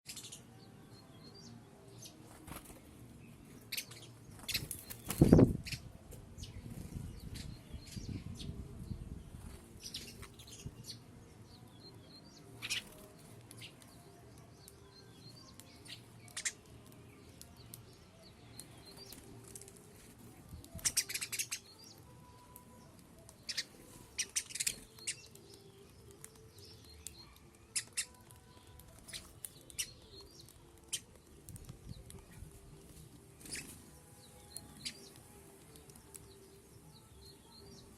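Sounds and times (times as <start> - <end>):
birds tapping grain: 12.5 - 37.9
faint bird chirps: 20.6 - 31.1.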